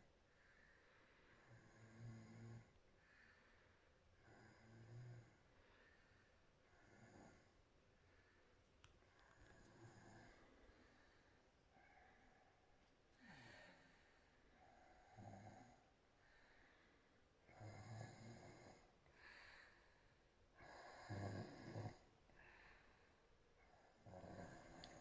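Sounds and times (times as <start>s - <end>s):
woman snoring faintly: 24.0s - 25.0s.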